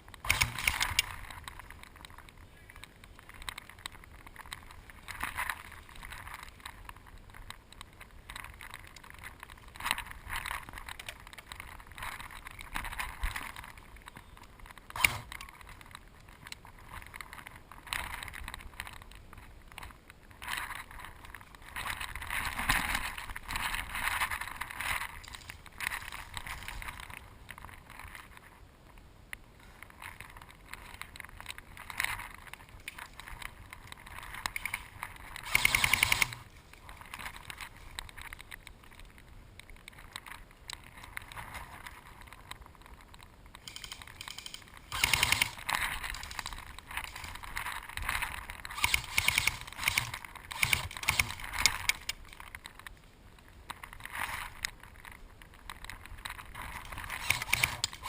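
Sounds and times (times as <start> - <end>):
sharp cracks: 0.0 - 28.5, 29.6 - 58.0
rustling through brush: 0.0 - 58.0
airsoft gun bursts: 0.2 - 1.0, 35.4 - 36.5, 43.7 - 45.6, 48.7 - 51.8, 57.2 - 58.0.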